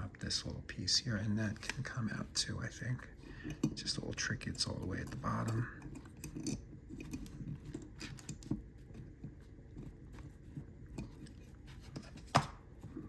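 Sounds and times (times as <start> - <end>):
small metal clicks and scrapes: 3.4 - 9.2.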